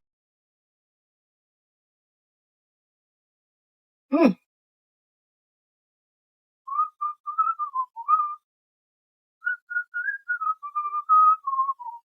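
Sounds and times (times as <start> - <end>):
person whistling a tune: 6.7 - 8.4, 9.4 - 12.0.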